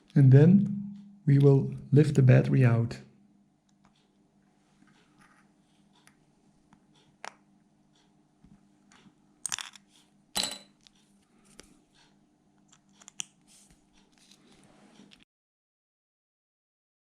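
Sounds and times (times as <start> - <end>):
small metallic clicks and scrapes: 12.7 - 15.2.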